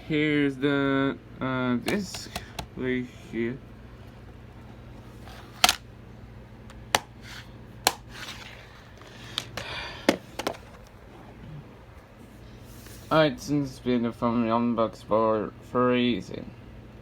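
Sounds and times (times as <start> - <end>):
plastic case clicking and snapping: 5.4 - 5.8, 7.9 - 8.1, 9.3 - 10.9.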